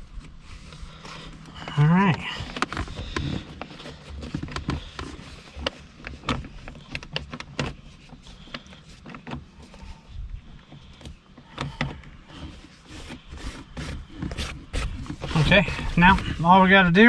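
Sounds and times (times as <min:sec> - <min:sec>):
hands clicking and rustling plastic trim: 0:10.8 - 0:16.4.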